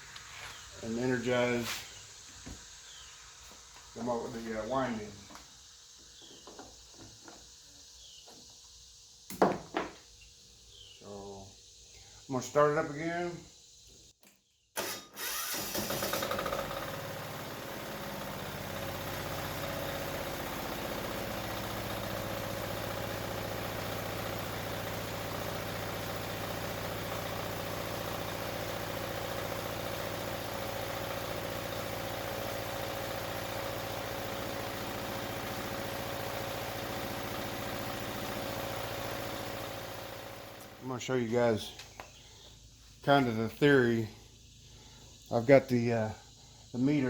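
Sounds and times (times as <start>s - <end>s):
diesel generator engine running: 15.2s - 47.0s.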